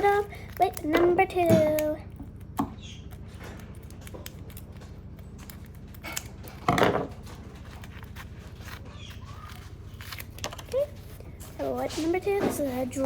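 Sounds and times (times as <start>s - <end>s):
steady low hum: 0.0s - 13.0s
craft items rustling: 3.2s - 13.0s.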